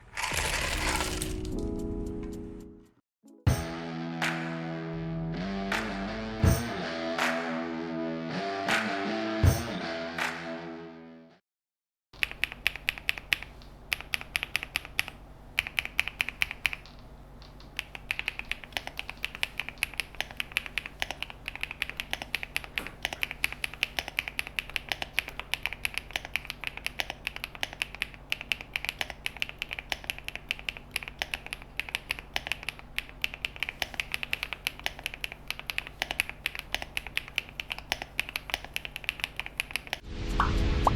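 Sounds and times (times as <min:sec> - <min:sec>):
mechanical keyboard typing: 0:12.2 - 0:40.0.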